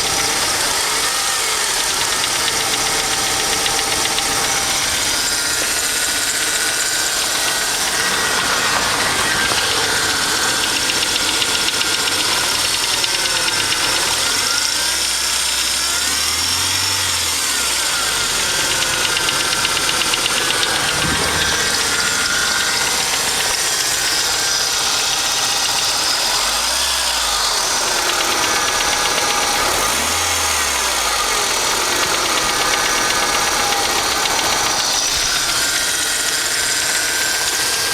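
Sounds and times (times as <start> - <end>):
car engine knocking and revving: 0.0 - 37.9.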